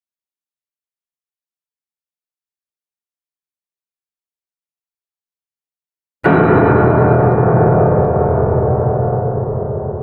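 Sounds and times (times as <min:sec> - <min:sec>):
loud ringing strike: 0:06.2 - 0:10.0.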